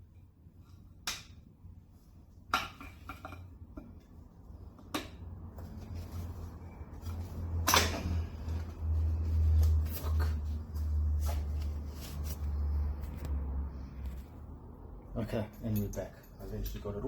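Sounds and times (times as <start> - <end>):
metal tools clinking and knocking: 15.2 - 17.0.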